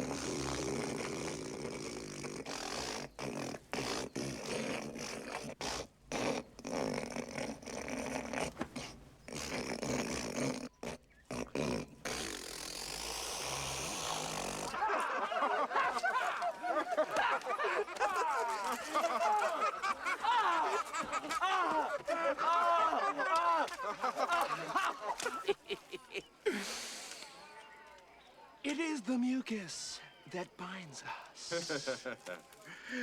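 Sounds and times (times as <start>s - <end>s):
man hawking up phlegm: 0.0s - 14.8s.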